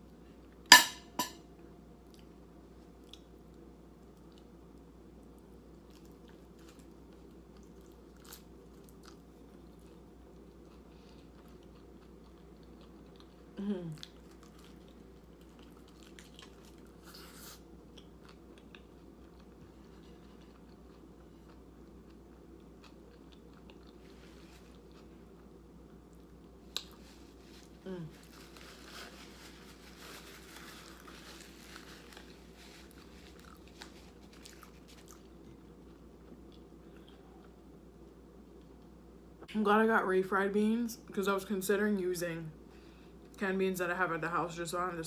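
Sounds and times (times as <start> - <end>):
steady low hum: 0.0 - 45.0
chewing and crunching chips: 2.0 - 37.8.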